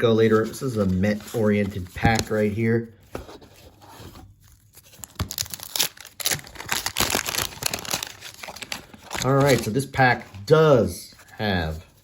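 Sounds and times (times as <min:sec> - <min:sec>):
wax paper wrapper tearing and crinkling: 0:04.6 - 0:09.9.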